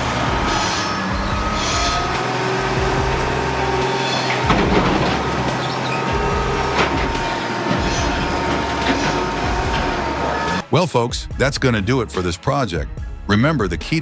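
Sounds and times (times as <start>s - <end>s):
sharp knocks: 0.0s - 10.6s
heavy machinery running: 0.0s - 10.7s.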